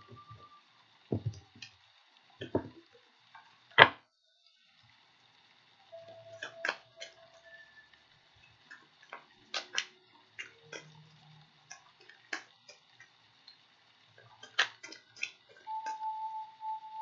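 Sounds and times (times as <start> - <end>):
cards clicking and snapping: 8.7 - 11.0, 14.2 - 16.0.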